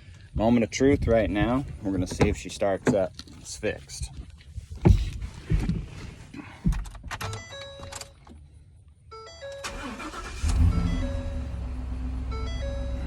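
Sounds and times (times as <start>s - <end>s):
truck engine starting and idling: 9.3s - 13.0s
repeating electronic chime: 10.6s - 13.0s.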